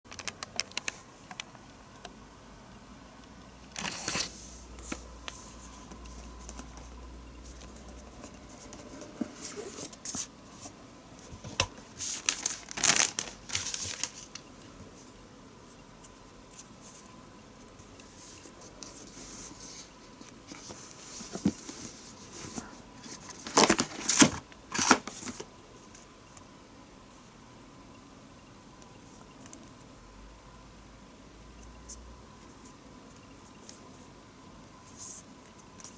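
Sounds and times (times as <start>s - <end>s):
packaging clicks: 0.1s - 1.4s
packaging tearing and crinkling: 12.1s - 14.4s, 23.4s - 25.4s.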